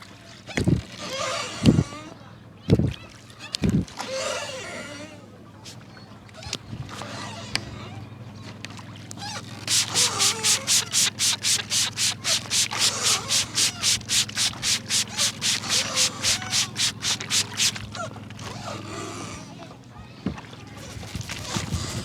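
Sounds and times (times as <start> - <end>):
low boat engine hum: 2.1 - 22.0
palms rubbing hair and scalp: 9.7 - 17.8, 20.8 - 22.0.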